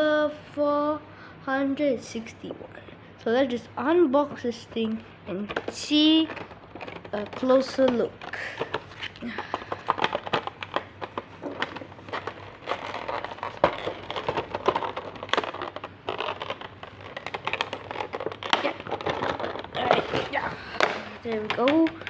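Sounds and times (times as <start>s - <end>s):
packaging crinkling and crackling: 4.7s - 22.0s.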